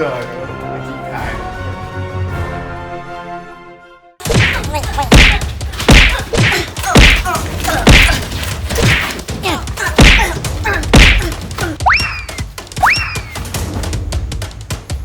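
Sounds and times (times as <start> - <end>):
music: 0.0 - 15.0
heavy whacks and thuds: 4.2 - 11.6.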